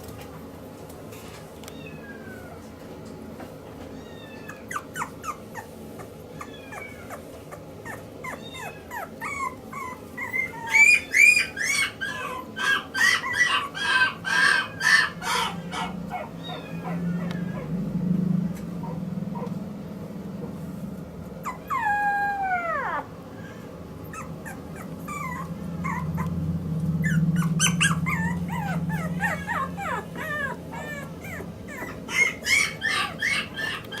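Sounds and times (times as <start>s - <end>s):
puppy whining and yipping: 4.0s - 17.7s, 21.4s - 26.4s, 27.0s - 34.0s.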